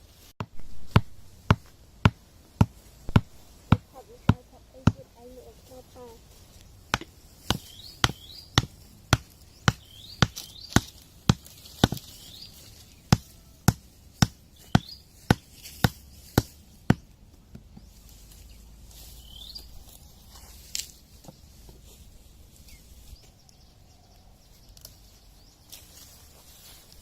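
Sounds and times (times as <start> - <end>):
steady chopping strikes: 0.4 - 5.0, 6.9 - 12.2, 13.1 - 17.9
birds chirping: 1.9 - 27.0.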